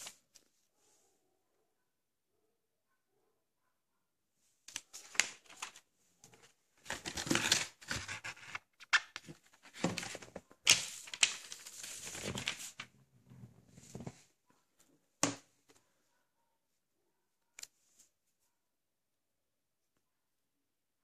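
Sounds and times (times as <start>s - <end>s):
shrink-wrap crinkling and tearing: 6.8s - 12.6s.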